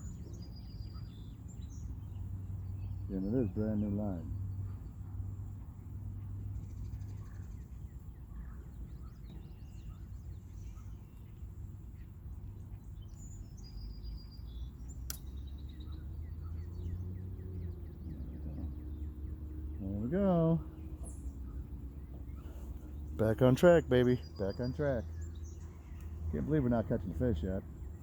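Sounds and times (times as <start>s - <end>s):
birds chirping: 0.0s - 28.0s
sharp click: 15.0s - 15.4s.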